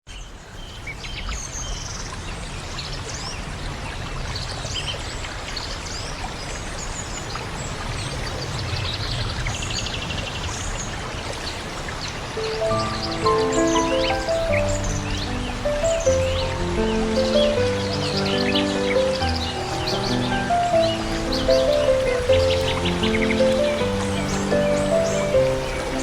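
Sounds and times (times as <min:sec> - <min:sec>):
flowing water rushing: 0:02.5 - 0:26.0
small birds chirping: 0:04.4 - 0:26.0
music: 0:12.4 - 0:26.0.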